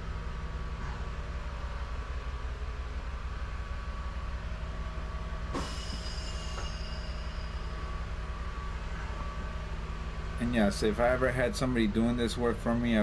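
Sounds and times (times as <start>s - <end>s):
tire changer machine hum: 0.0s - 13.0s
brief high squeal: 5.6s - 9.4s.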